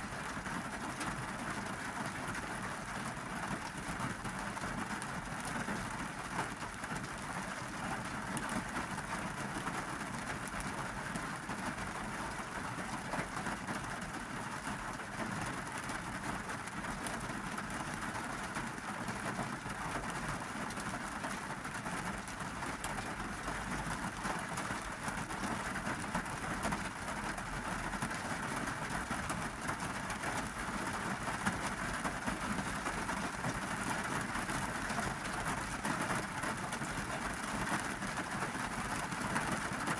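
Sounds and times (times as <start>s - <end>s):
rain on car roof and glass: 0.0s - 39.9s.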